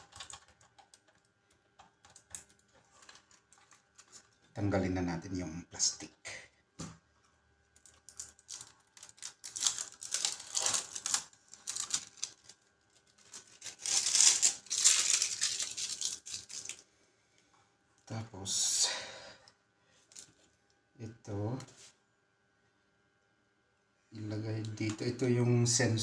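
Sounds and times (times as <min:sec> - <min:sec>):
plastic packaging crinkling: 0:02.1 - 0:04.5, 0:07.8 - 0:16.9.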